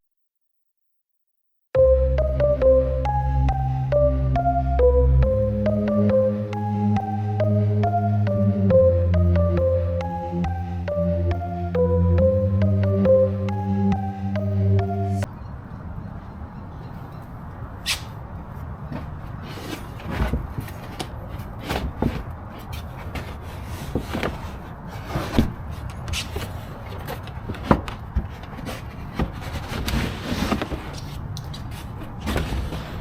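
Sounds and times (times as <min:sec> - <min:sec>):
steady low rumble: 0:01.8 - 0:15.3.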